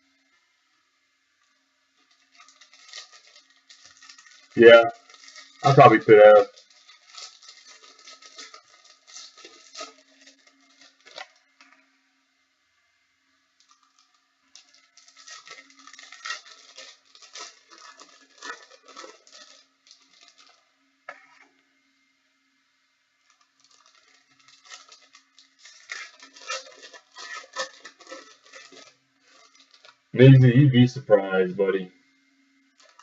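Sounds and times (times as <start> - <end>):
faint steady hum: 0.0 - 33.0
packaging crinkling and tearing: 1.4 - 11.8, 13.6 - 20.8, 23.2 - 30.1, 32.6 - 33.0.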